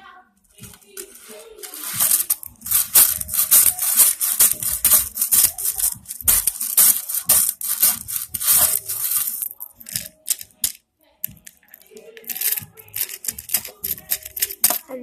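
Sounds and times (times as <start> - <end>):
hands rubbing and rustling: 0.6 - 15.0.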